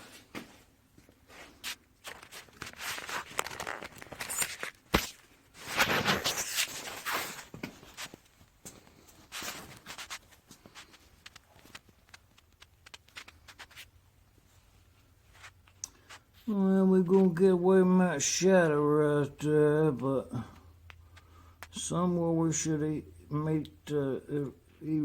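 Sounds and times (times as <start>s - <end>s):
objects being handled: 0.0s - 16.5s
shuffling noise: 0.0s - 17.4s.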